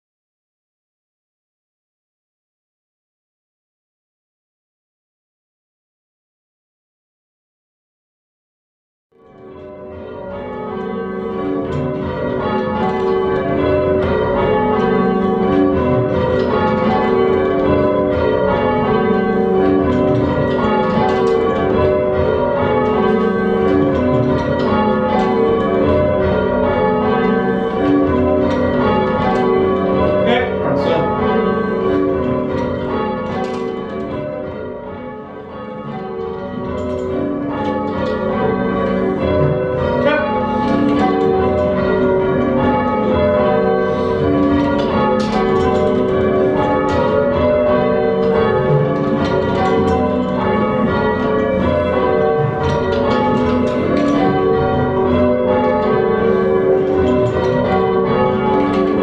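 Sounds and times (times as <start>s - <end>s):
church bells ringing in changes: 9.2s - 59.0s.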